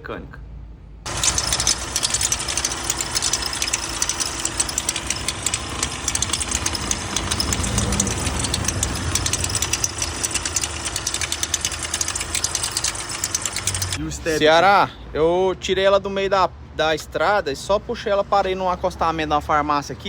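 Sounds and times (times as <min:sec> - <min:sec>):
diesel engine ticking clatter: 0:01.1 - 0:14.0.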